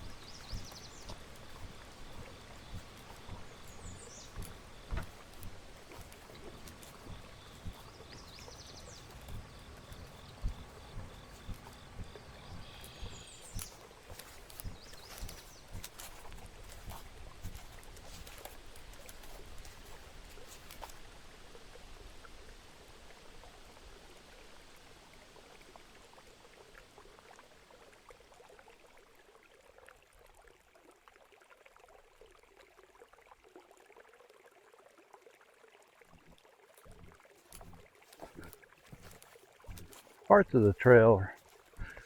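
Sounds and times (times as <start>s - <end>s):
soft thumps: 0.0s - 20.0s
creek water trickling: 0.0s - 42.0s.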